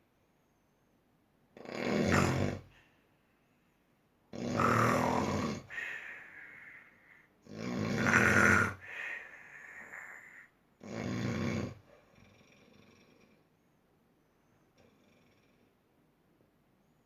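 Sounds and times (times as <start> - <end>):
loud snoring: 1.6 - 2.7, 4.3 - 6.0, 7.4 - 13.4.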